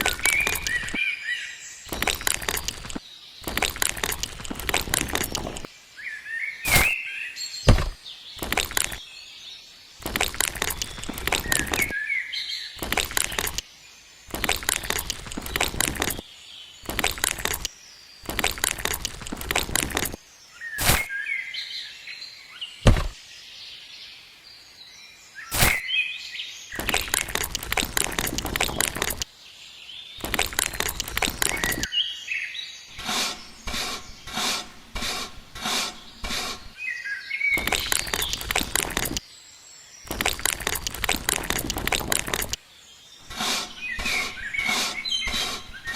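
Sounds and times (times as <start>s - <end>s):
birds chirping: 0.0s - 21.8s, 25.3s - 45.9s
rough scraping or rustling: 1.9s - 5.7s, 6.7s - 7.0s, 7.7s - 9.0s, 10.0s - 11.9s, 20.8s - 21.1s, 22.8s - 23.2s, 25.5s - 25.8s, 30.2s - 31.9s, 32.9s - 36.8s, 37.6s - 39.2s, 43.2s - 45.9s
quick even strokes: 32.9s - 36.8s, 43.2s - 45.9s.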